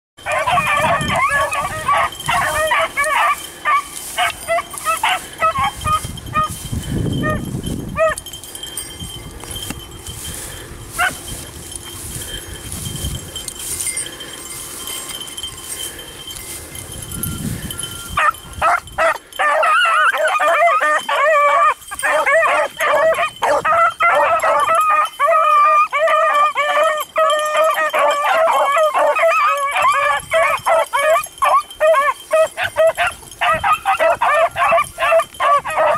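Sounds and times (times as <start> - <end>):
dog yipping: 0.2 - 6.6, 8.0 - 8.2, 11.0 - 11.2, 17.8 - 35.9
dogs baying and howling: 0.2 - 35.9.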